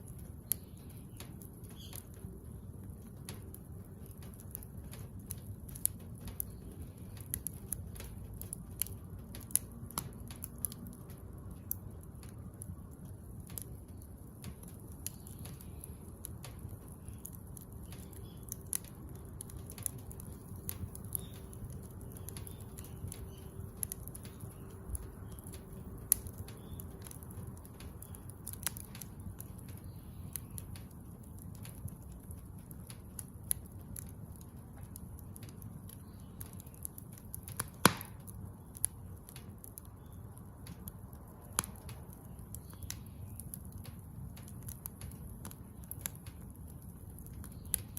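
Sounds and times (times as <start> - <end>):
low steady fire rumble: 0.0 - 47.9
wood fire crackling and popping: 0.0 - 47.9.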